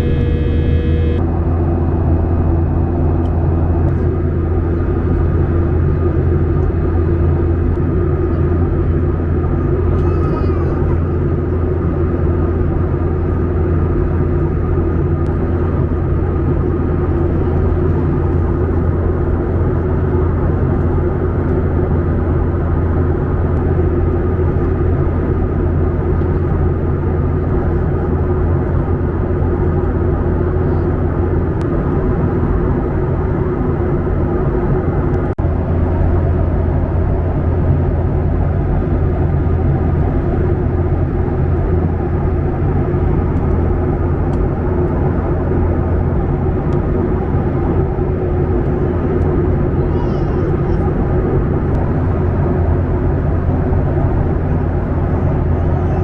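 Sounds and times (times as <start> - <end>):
steady tones: 0.0 - 1.3
jet airliner cabin drone: 0.0 - 56.0.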